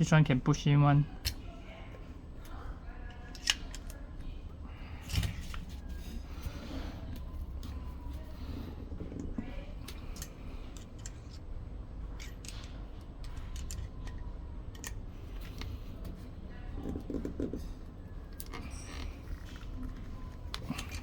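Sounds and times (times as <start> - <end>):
steady low hum: 0.0 - 21.0
plastic parts clicking and scraping: 3.0 - 4.0, 12.1 - 16.2, 18.4 - 21.0.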